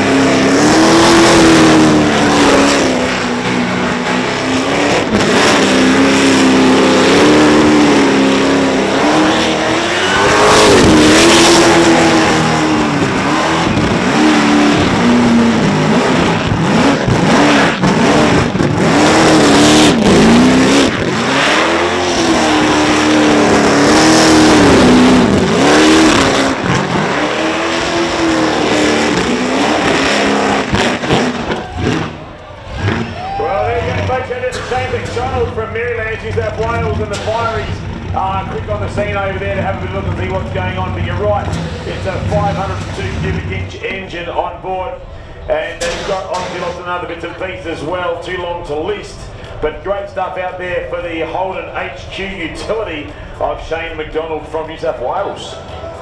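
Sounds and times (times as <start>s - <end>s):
car engine revving hard: 0.0s - 43.8s.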